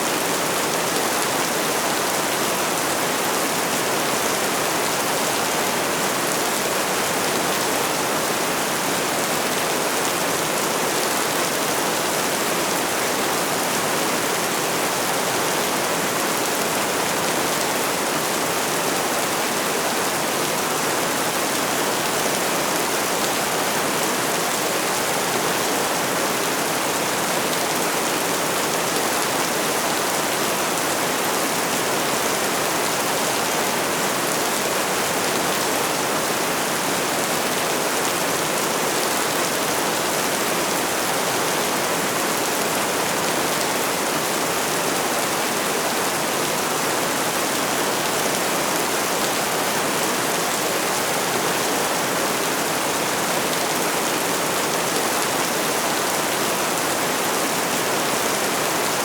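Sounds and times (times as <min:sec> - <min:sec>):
steady rain: 0:00.0 - 0:59.0.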